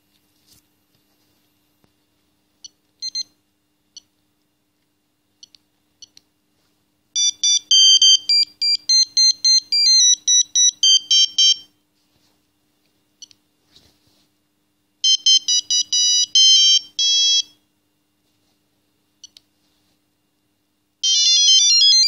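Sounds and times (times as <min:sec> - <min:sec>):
electronic ringtone melody: 0:07.2 - 0:11.6, 0:15.0 - 0:17.5, 0:21.0 - 0:22.0.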